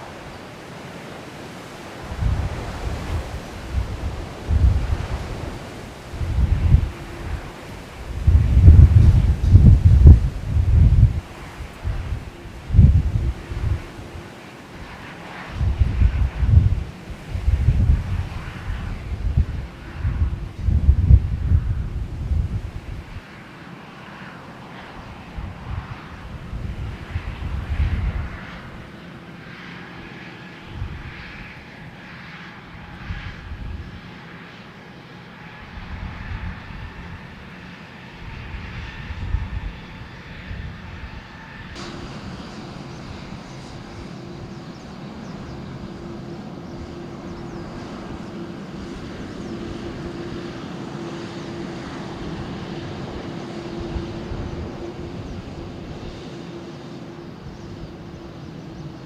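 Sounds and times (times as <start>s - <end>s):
low steady hum: 0.0s - 23.4s, 35.6s - 59.0s
wind on microphone: 0.0s - 34.6s, 35.3s - 59.0s
jet engines whining: 0.0s - 59.0s.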